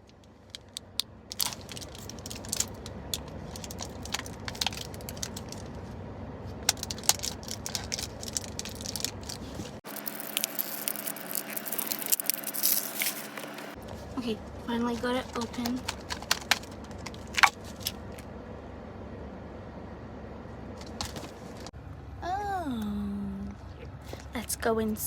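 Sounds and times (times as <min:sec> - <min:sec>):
plastic packaging crinkling: 0:00.0 - 0:05.8, 0:06.6 - 0:14.1, 0:14.9 - 0:18.0
steady low hum: 0:00.0 - 0:25.0.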